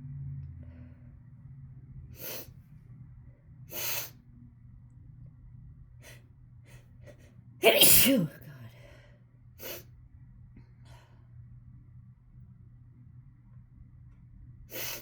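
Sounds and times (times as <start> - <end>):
person sniffing through nose: 2.2 - 2.5, 3.7 - 4.1, 14.7 - 15.0.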